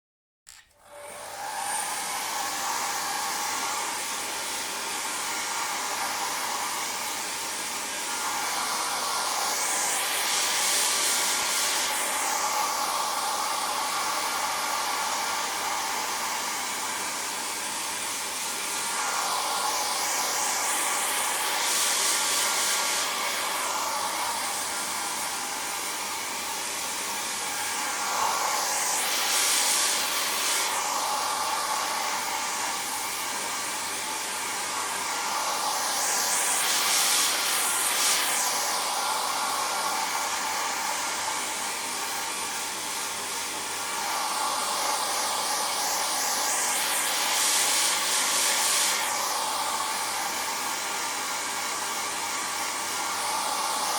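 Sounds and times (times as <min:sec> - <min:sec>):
hair dryer running: 0:00.5 - 0:53.9.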